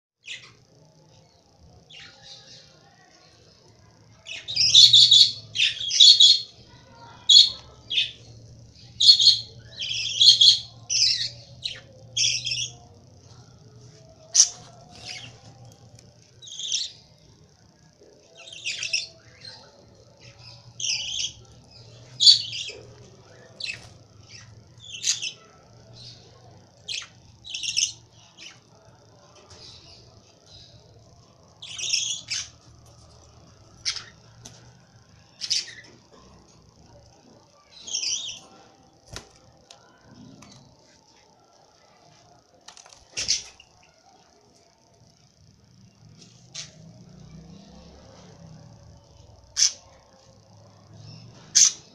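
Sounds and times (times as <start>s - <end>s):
faint low hum: 0.2s - 51.9s
lovebirds squawking and chirping: 9.0s - 12.8s.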